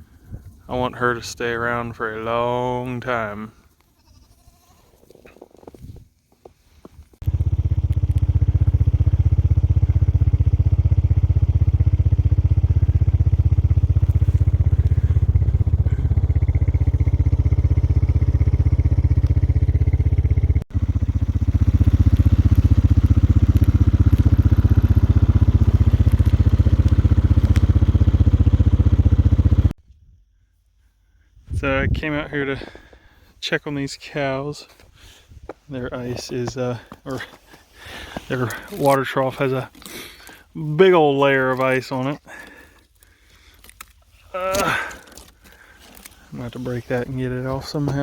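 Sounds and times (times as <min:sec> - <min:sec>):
vehicle engine running: 0:07.2 - 0:29.8.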